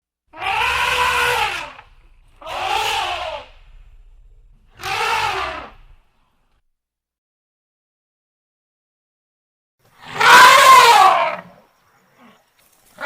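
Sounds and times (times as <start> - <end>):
elephant trumpeting: 0.3 - 6.4, 10.1 - 11.3.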